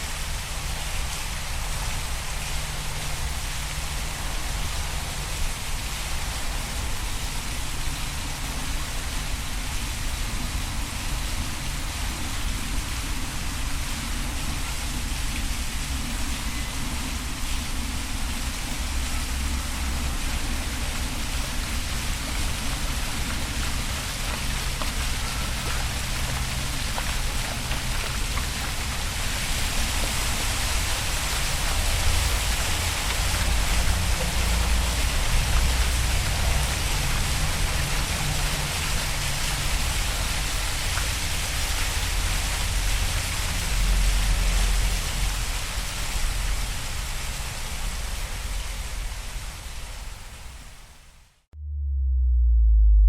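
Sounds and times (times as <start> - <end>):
rain-like hiss: 0.0 - 51.5
low rumble: 51.6 - 53.0.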